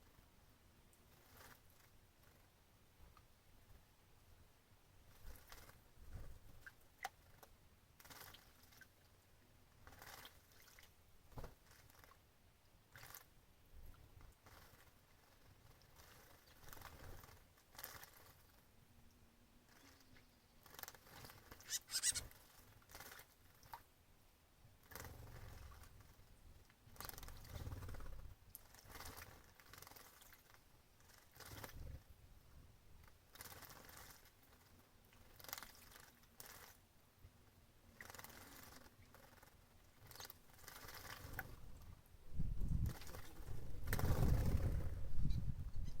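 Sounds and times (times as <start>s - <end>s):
bird wings fluttering: 20.6s - 23.2s, 27.0s - 30.6s, 42.4s - 46.0s.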